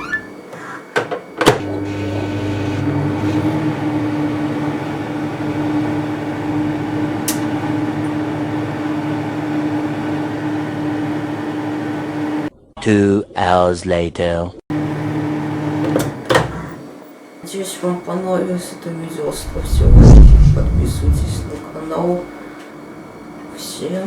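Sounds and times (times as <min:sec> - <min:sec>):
microwave oven humming: 0:00.0 - 0:12.5, 0:14.7 - 0:19.3.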